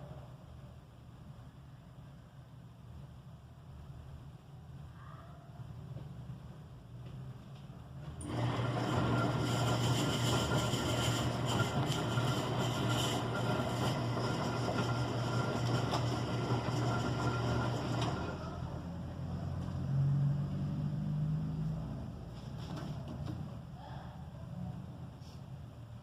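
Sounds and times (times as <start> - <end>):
washing machine running: 8.2 - 19.3.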